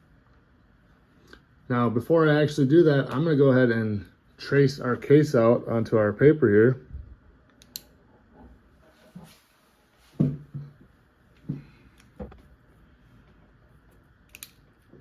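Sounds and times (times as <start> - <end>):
sharp click: 14.3 - 14.6.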